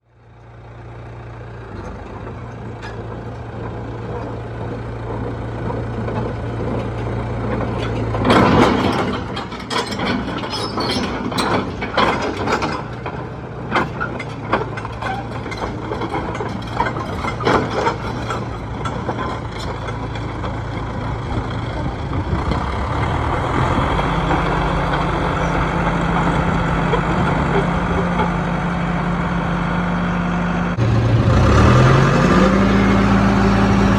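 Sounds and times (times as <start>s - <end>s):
diesel engine running: 0.0s - 33.9s
metallic clanks and knocks: 1.8s - 21.0s.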